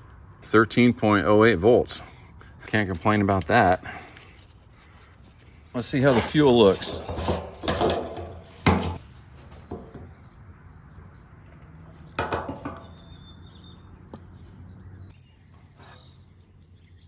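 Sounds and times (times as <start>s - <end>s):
small birds chirping: 0.0s - 17.0s
clatter of knocks: 6.9s - 9.0s, 12.2s - 13.1s
fuel tank cap clunk: 12.2s - 13.0s.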